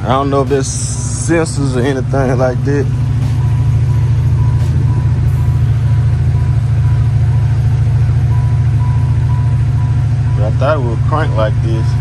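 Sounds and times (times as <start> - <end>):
car engine running: 0.0 - 12.0
faint high beep: 8.3 - 10.4.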